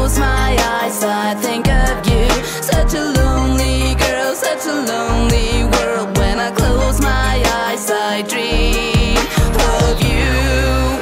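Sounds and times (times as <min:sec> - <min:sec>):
drum beat and bass: 0:00.0 - 0:11.0
person singing: 0:00.0 - 0:11.0.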